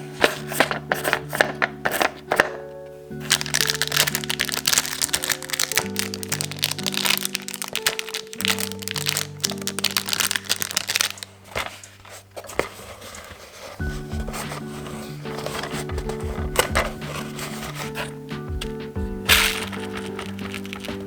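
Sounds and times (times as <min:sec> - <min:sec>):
rapid crackling clicks: 0:03.3 - 0:11.3
music with held notes: 0:13.8 - 0:21.0.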